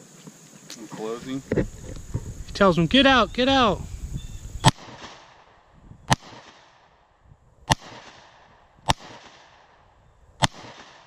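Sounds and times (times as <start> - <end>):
rifle shots with echo: 4.6 - 7.1, 7.7 - 11.0.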